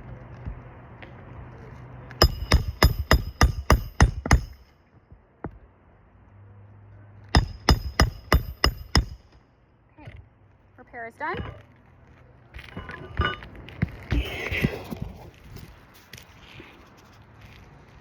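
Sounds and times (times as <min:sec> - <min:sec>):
hammer striking roofing nails: 0:02.2 - 0:04.7, 0:07.3 - 0:09.4.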